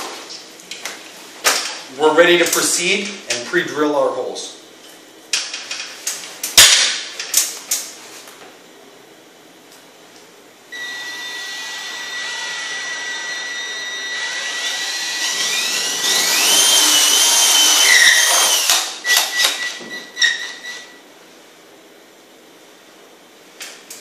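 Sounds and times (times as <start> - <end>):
power drill whining: 10.8 - 21.0.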